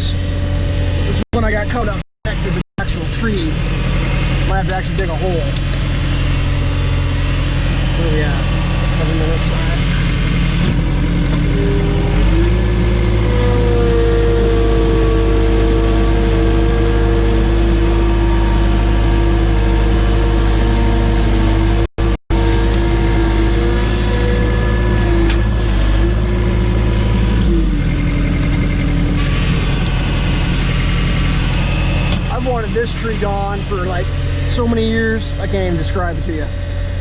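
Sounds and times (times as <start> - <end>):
backhoe engine running: 0.0 - 37.0
steady machine whine: 0.0 - 37.0.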